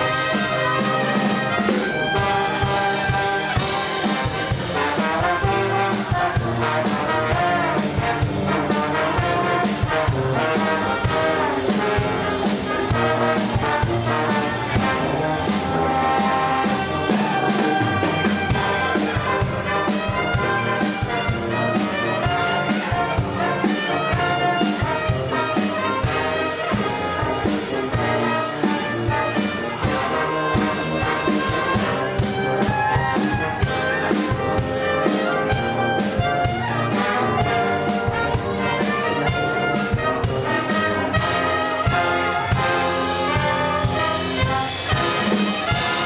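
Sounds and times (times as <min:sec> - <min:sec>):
brass horns playing melody: 0:00.0 - 0:46.0
steady drum beat: 0:00.0 - 0:46.0.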